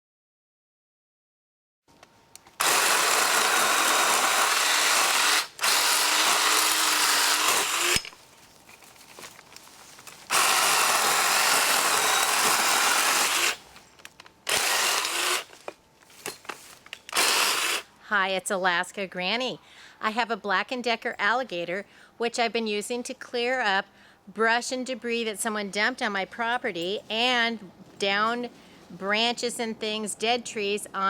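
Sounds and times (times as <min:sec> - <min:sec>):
battery chainsaw running: 0:02.6 - 0:08.1, 0:10.3 - 0:13.7, 0:14.5 - 0:15.6, 0:17.1 - 0:17.9.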